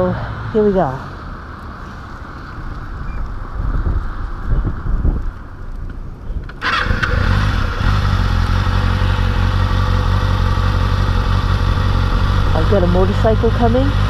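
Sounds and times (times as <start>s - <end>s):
motorcycle engine running: 6.6s - 14.0s.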